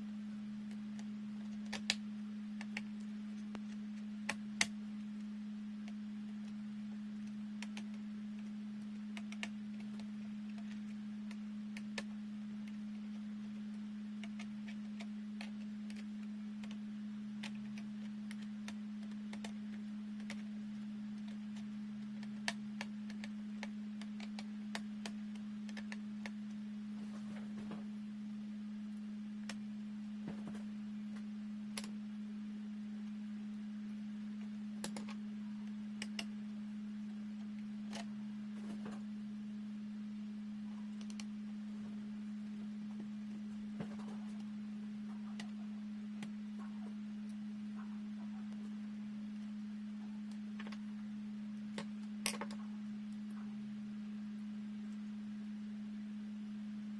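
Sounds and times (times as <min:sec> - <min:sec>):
low hum: 0:00.0 - 0:56.9
small clicks and taps: 0:00.7 - 0:02.0, 0:21.2 - 0:26.4, 0:34.4 - 0:36.3.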